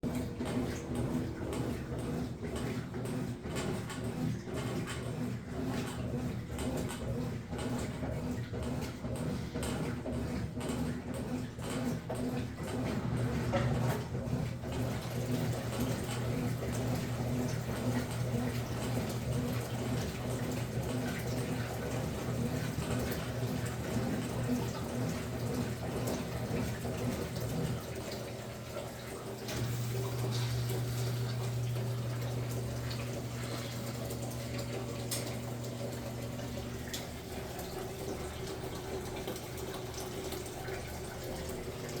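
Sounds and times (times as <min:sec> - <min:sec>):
washing machine low hum: 0:00.0 - 0:42.0
water moving in washing machine tub: 0:00.0 - 0:42.0.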